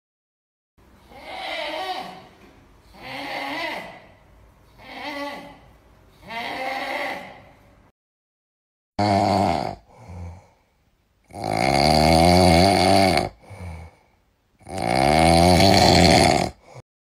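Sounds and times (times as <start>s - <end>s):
loud rasping snoring: 9.0s - 10.5s, 11.3s - 14.0s, 14.6s - 16.8s
quiet breath: 9.8s - 11.0s, 13.3s - 14.4s, 16.6s - 16.8s.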